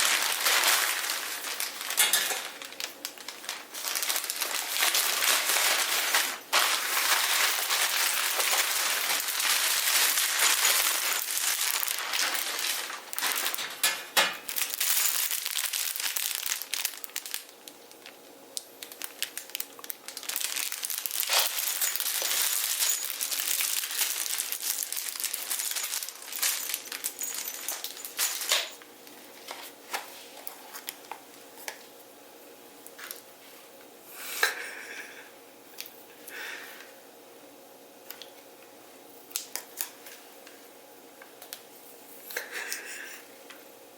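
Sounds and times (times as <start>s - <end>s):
packaging crinkling: 0.0s - 31.8s.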